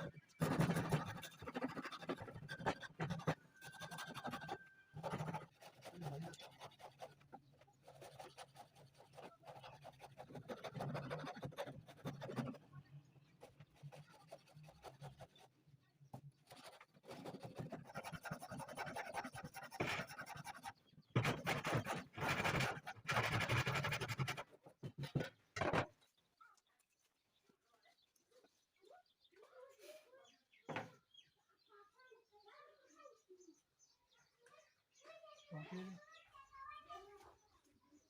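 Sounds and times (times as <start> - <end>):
rapid scraping strokes: 0.0 - 15.6, 16.4 - 25.3.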